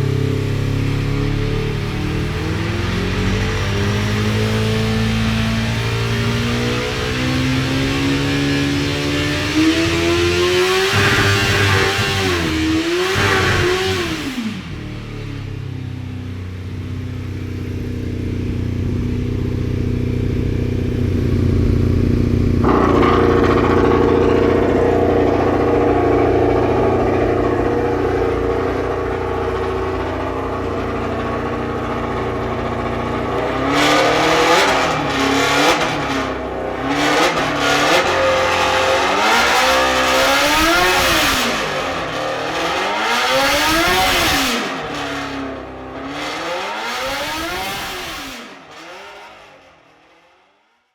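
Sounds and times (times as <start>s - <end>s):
race car engine revving: 0.0s - 15.7s, 16.5s - 50.4s.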